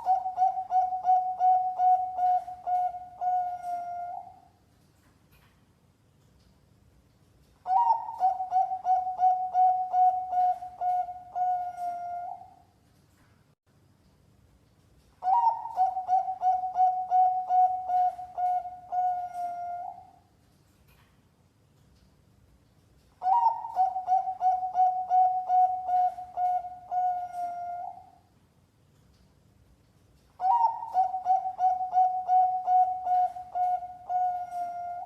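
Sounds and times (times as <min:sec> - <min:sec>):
dove cooing: 0:00.0 - 0:04.5, 0:07.7 - 0:12.6, 0:15.2 - 0:20.2, 0:23.2 - 0:28.2, 0:30.4 - 0:35.0.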